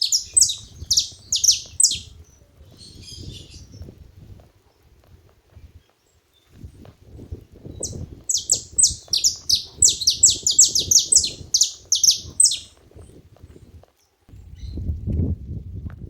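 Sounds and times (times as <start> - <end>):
finches calling: 0.0 - 2.1, 7.8 - 12.7.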